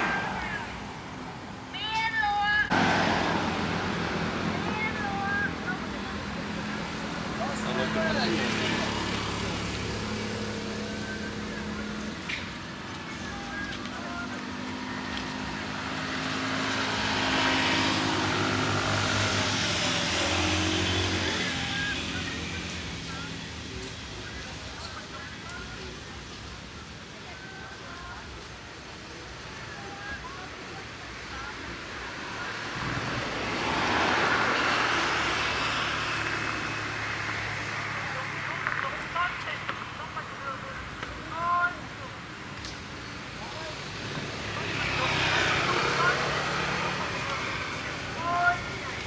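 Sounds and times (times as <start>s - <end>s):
vehicle passing by: 0.0s - 1.7s, 2.5s - 26.2s, 30.1s - 40.8s, 43.0s - 49.0s
road noise: 0.0s - 49.0s.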